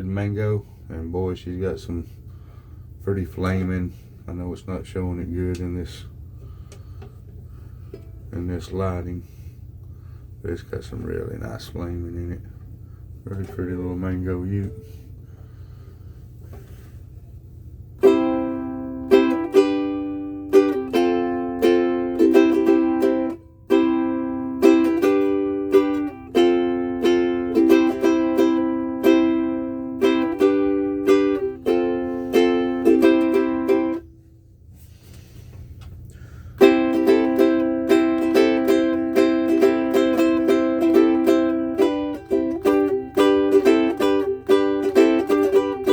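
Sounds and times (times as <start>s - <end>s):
ukulele strummed chords: 18.0s - 34.1s, 36.6s - 45.9s.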